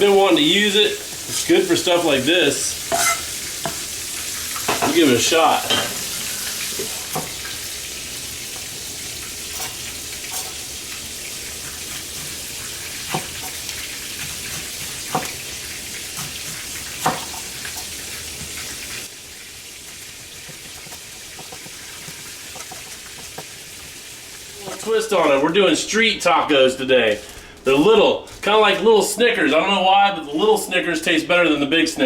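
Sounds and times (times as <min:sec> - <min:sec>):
fish frying in hot oil: 0:00.0 - 0:25.4.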